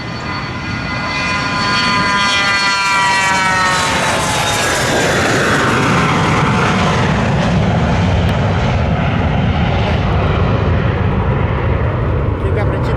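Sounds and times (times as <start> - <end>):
jet engines at takeoff: 0.0 - 12.9.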